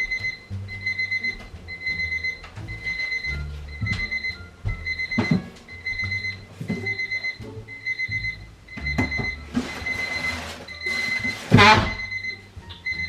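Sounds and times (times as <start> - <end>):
knocks and thumps: 0.0 - 12.0
alarm clock beeping: 0.0 - 13.0.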